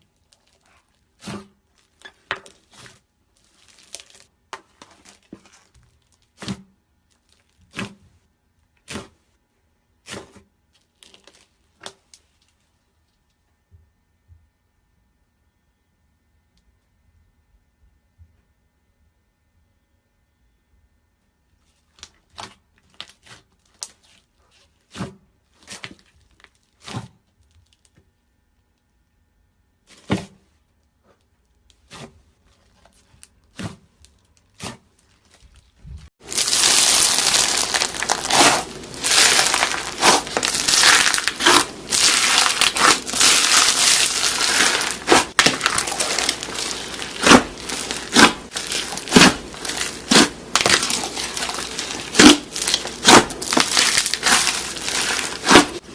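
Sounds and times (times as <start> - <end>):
slime crunching and crackling: 0.0 - 6.5, 10.1 - 12.0, 31.7 - 55.9.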